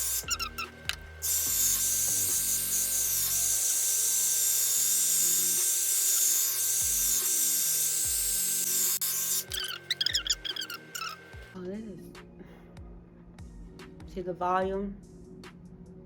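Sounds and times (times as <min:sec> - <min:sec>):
background music with bass: 0:00.0 - 0:03.8, 0:09.5 - 0:16.0
hair dryer blowing: 0:00.0 - 0:09.6.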